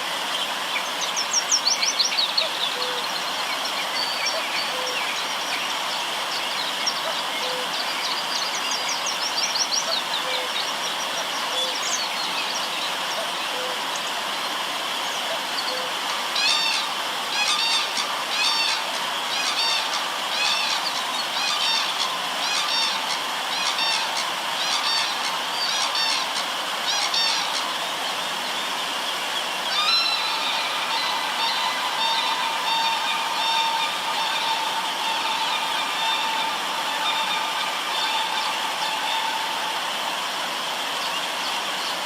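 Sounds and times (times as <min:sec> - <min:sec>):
rushing river water: 0:00.0 - 0:42.0
bird repeated high calls: 0:15.7 - 0:27.7.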